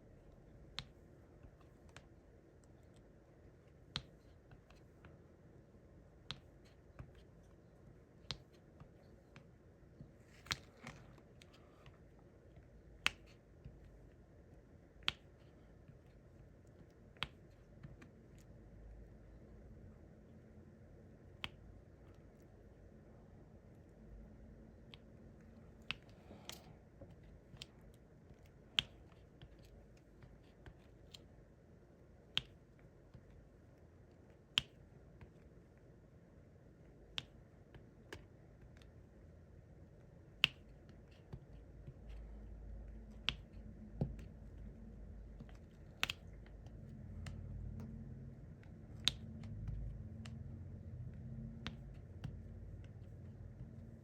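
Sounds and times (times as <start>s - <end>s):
low hum: 42.0s - 54.0s.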